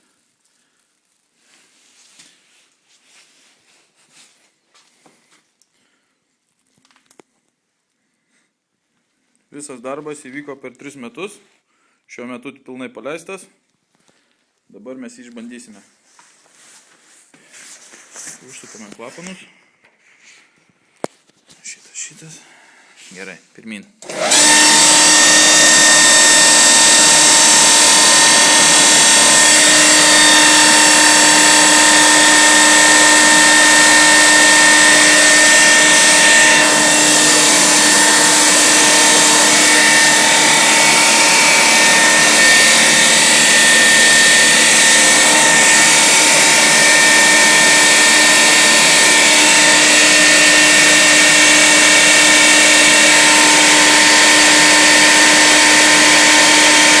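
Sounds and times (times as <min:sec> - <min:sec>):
air compressor running: 0:24.0 - 0:57.0.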